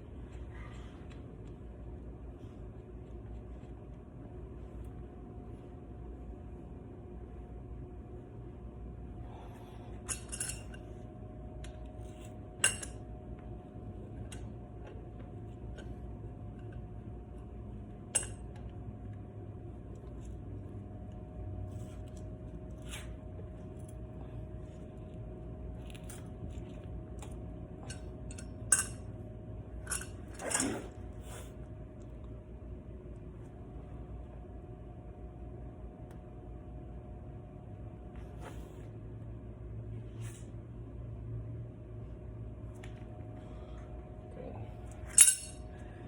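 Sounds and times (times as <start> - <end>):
steady hum: 0.0 - 46.0
metallic clinks of tools: 45.1 - 45.6.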